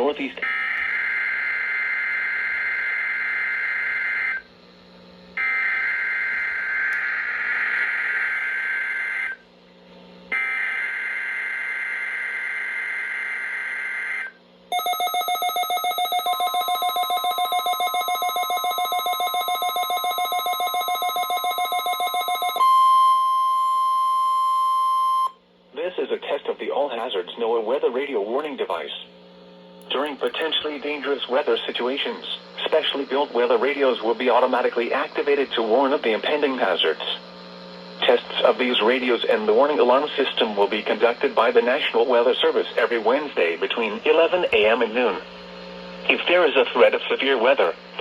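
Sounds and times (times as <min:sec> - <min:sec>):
rapidly pulsing electronic alarm: 0:00.4 - 0:04.5, 0:05.4 - 0:09.4, 0:10.3 - 0:25.4, 0:30.9 - 0:44.8
steady high warning tone: 0:05.4 - 0:09.4, 0:10.3 - 0:25.4, 0:29.8 - 0:47.7.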